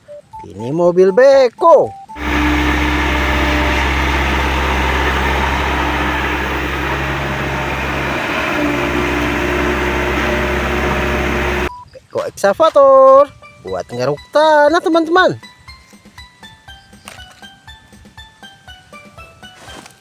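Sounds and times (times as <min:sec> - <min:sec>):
motor humming with hiss: 0:02.2 - 0:11.7.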